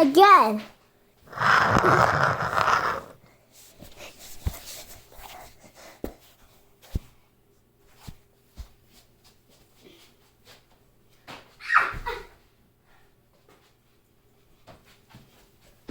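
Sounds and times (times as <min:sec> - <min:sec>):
soft handling and rustling: 0:01.3 - 0:11.3.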